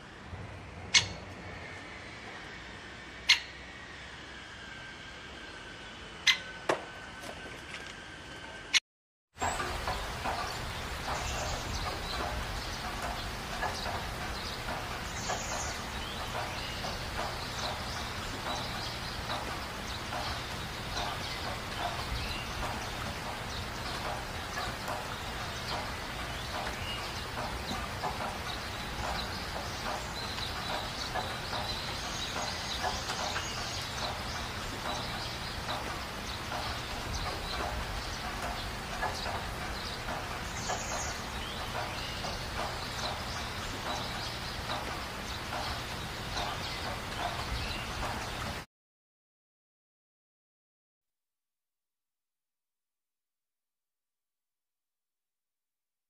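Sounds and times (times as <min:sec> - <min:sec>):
many birds calling: 0:00.9 - 0:01.3, 0:09.4 - 0:48.6.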